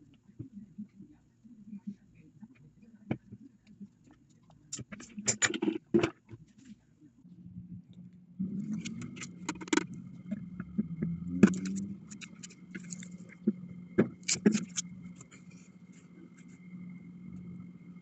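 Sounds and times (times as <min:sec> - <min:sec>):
steady low hum: 0:00.0 - 0:18.0
objects clicking and knocking: 0:08.6 - 0:15.5.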